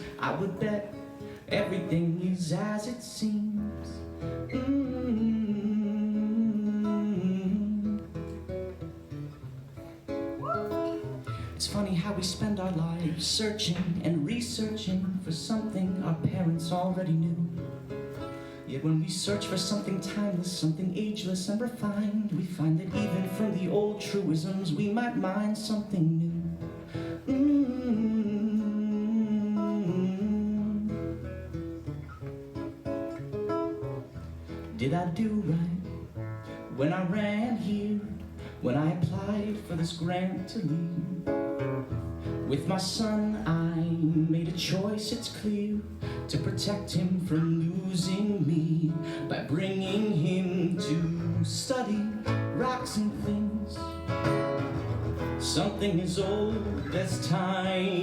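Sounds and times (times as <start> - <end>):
acoustic guitar: 0.0 - 58.0
person singing: 55.4 - 58.0.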